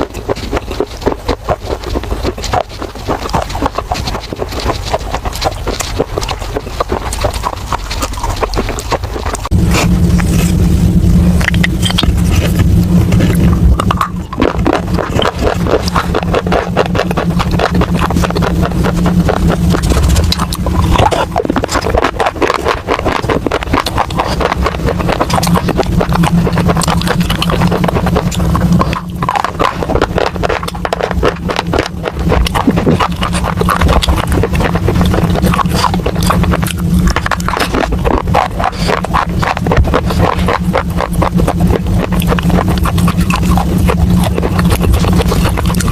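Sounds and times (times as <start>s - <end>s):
crunching and chewing clay: 0.0s - 45.9s
steady low hum: 0.0s - 45.9s.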